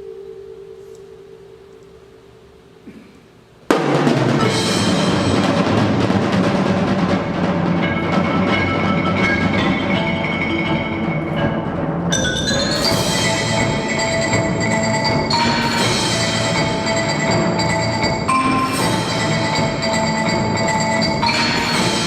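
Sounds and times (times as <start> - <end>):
drums and mallet instruments: 3.7 - 22.0
high bell-like notes: 7.8 - 22.0.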